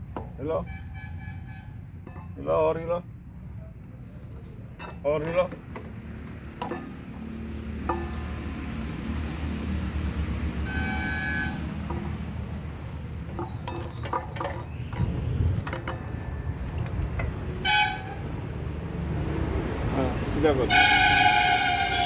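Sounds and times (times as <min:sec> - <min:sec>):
low traffic rumble: 0:00.0 - 0:22.0
vehicle horns honking: 0:00.6 - 0:01.9, 0:10.6 - 0:12.2, 0:17.6 - 0:18.3, 0:20.6 - 0:22.0
sharp knocks and clicks: 0:13.2 - 0:17.4.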